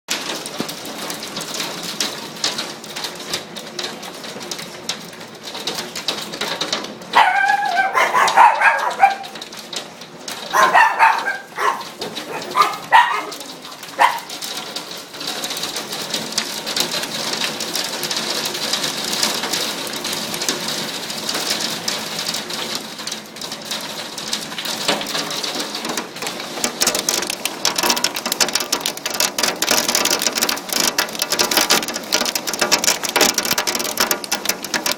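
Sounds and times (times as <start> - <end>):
hailstones clattering: 0.1 - 34.9
dog barking: 7.1 - 9.4, 10.5 - 14.4.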